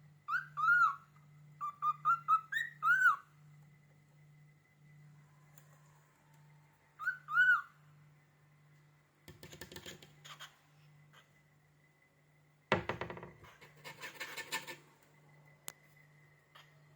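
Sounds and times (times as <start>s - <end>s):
cockatiel whistling: 0.3s - 1.0s, 1.6s - 3.2s, 7.0s - 7.7s.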